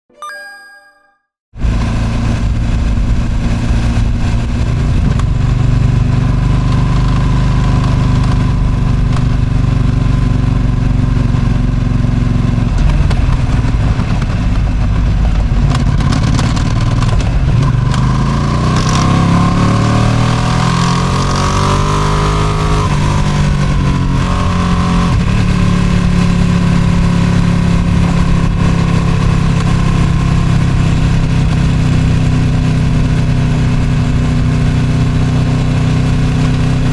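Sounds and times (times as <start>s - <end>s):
wind noise: 1.6s - 6.9s
motorcycle engine accelerating: 1.6s - 36.9s.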